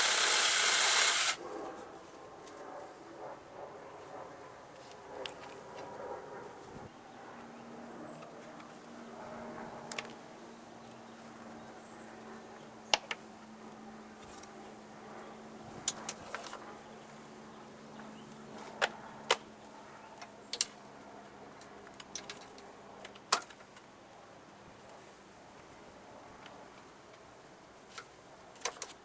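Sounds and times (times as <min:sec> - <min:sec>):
tools and small parts clicking: 0:21.6 - 0:23.8.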